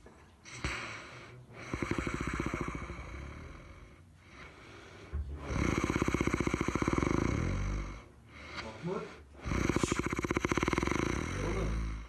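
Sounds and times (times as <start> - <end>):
person breathing: 0.4 - 12.0
fluttering snore: 1.6 - 4.0, 5.4 - 8.1, 9.4 - 12.0.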